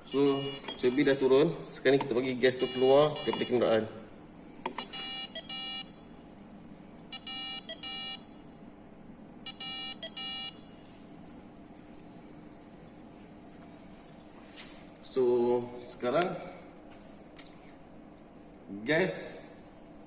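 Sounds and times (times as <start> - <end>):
detector buzzer beeping in pairs: 0.0 - 1.2, 2.4 - 3.7, 4.7 - 6.0, 7.1 - 8.3, 9.4 - 10.7.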